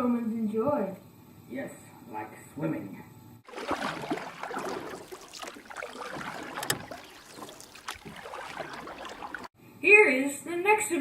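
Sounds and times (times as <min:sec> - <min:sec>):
swimmers splashing: 0:03.5 - 0:09.5
water rushing: 0:03.5 - 0:09.5.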